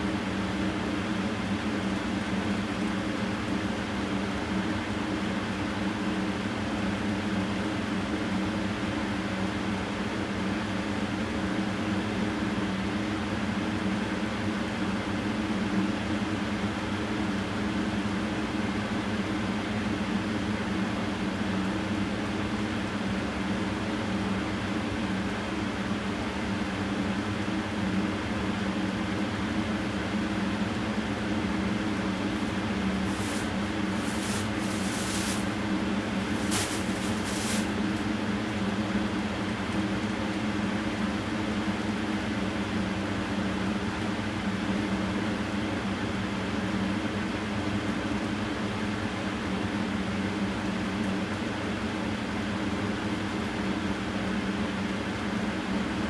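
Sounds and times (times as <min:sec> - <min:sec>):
mechanical hum: 0:00.0 - 0:49.1
background hiss: 0:32.2 - 0:38.2
brief hissing bursts: 0:32.3 - 0:38.1.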